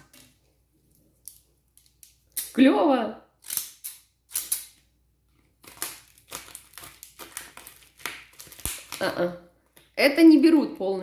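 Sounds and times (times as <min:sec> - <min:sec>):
packaging crackling: 0:05.4 - 0:09.9.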